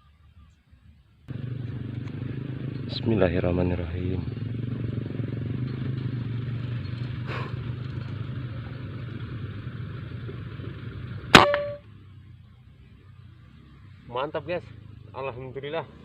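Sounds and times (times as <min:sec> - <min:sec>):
vehicle engine rumble: 0:01.2 - 0:16.0
air rifle shot: 0:11.3 - 0:11.8
metallic ring: 0:11.3 - 0:11.9.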